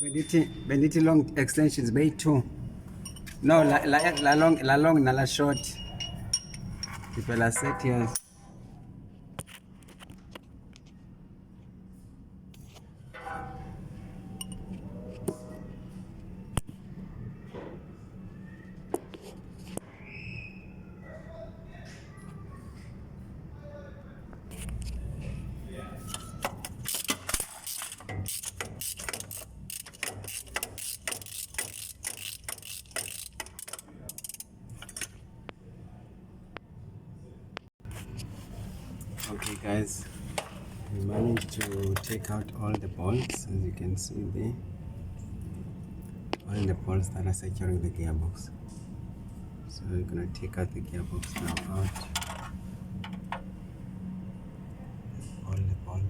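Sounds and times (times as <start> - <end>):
steady low hum: 0.0 - 56.0
metal hand tools clinking: 3.0 - 4.7
ratchet wrench clicking: 26.5 - 35.0.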